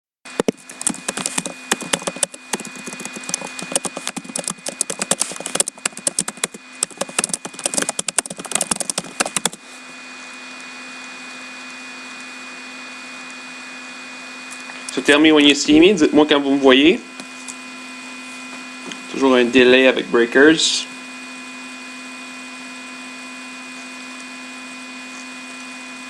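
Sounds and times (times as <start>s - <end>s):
dense irregular crackling: 0.3s - 9.6s
steady hum and hiss: 0.3s - 21.6s.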